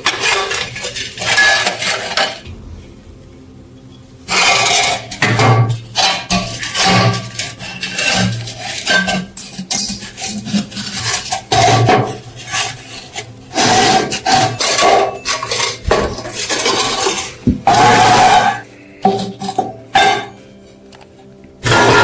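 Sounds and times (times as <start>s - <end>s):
rasping strokes on metal: 6.0s - 18.6s.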